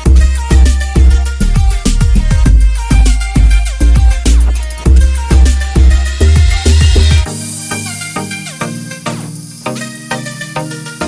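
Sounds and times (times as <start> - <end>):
deep bass kick: 0.0 - 7.3
electronic dance music: 0.0 - 11.0.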